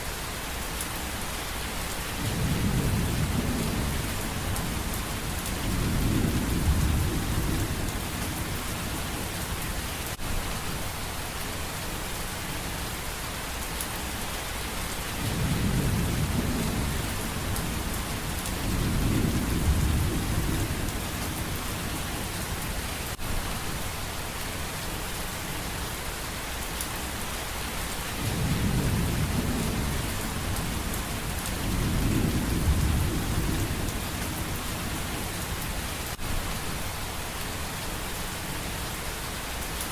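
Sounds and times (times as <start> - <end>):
steady rain: 0.0 - 39.9
thunder rumbling: 15.2 - 22.4, 28.2 - 35.9.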